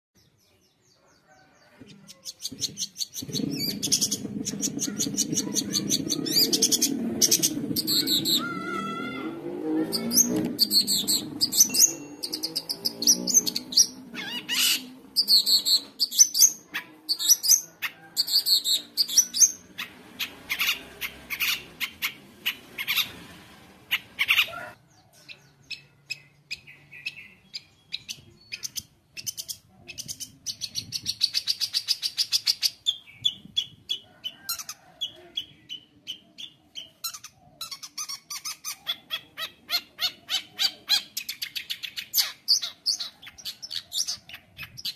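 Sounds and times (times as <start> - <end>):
bird singing varied chirps: 0.2 - 23.1, 23.9 - 34.0, 35.0 - 44.9.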